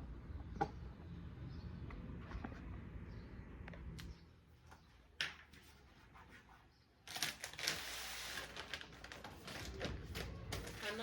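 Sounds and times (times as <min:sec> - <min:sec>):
packaging crinkling and rustling: 0:07.0 - 0:11.0.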